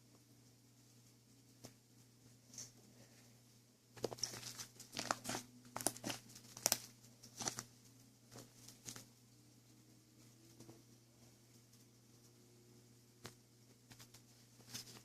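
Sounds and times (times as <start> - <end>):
crinkling and rustling: 3.9 - 9.3, 13.2 - 15.0.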